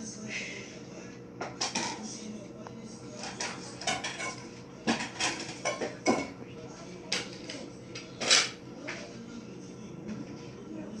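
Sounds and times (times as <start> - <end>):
faint steady hum: 0.0 - 11.0
dishes and cutlery clattering: 1.4 - 2.1, 3.2 - 6.4, 7.1 - 9.0.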